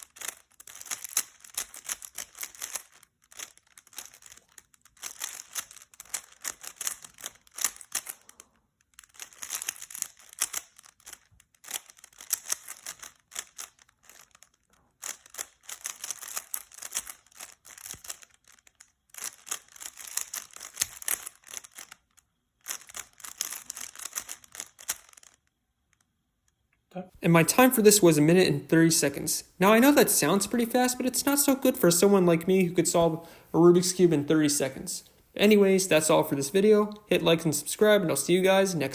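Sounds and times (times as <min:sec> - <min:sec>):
puzzle cube plastic clicking: 0:00.0 - 0:26.6.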